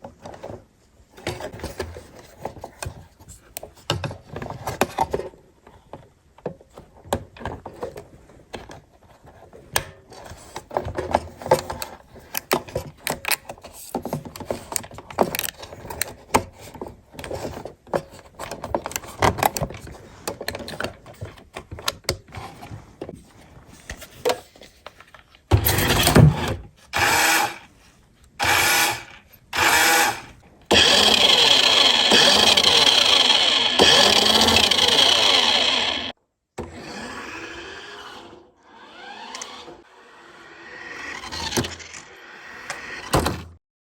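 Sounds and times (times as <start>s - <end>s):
plastic parts clicking and rubbing: 0.0s - 26.3s
small electric motor whirring: 26.9s - 27.7s, 28.4s - 36.2s, 36.8s - 43.1s.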